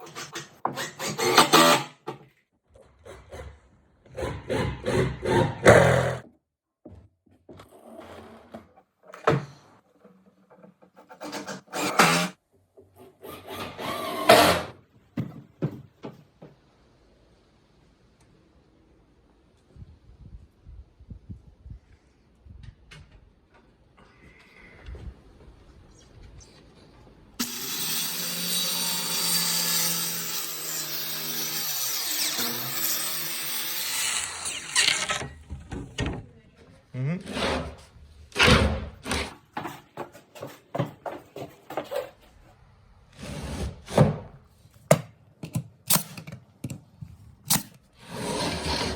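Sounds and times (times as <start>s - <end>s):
flooring scraping and sliding: 5.1s - 12.4s, 34.1s - 44.9s, 48.0s - 48.9s
power saw cutting wood: 27.4s - 35.3s, 48.0s - 48.9s.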